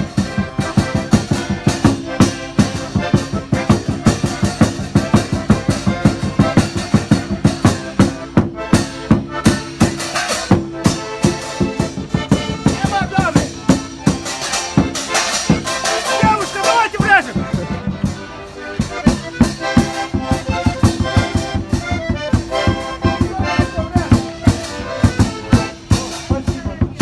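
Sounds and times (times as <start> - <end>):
quick drum beat: 0.0 - 8.1, 9.6 - 14.2, 19.0 - 27.0
sustained folk melody: 0.0 - 27.0.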